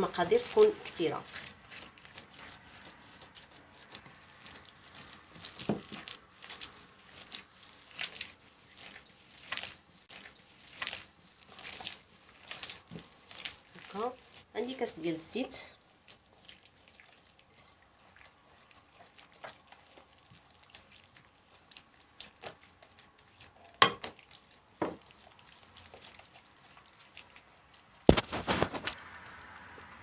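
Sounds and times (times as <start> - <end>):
glass and utensils knocking: 23.8 - 24.1
brief rustle: 28.1 - 29.3.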